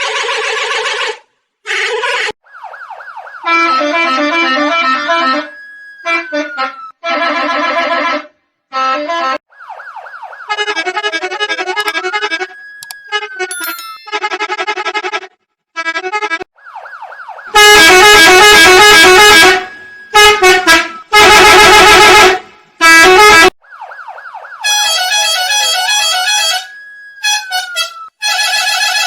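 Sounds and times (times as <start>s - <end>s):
police siren wailing: 2.4s - 7.0s, 9.5s - 13.5s, 16.6s - 21.2s, 23.6s - 28.2s
distorted bus horn blasts: 17.6s - 23.6s, 24.7s - 29.0s.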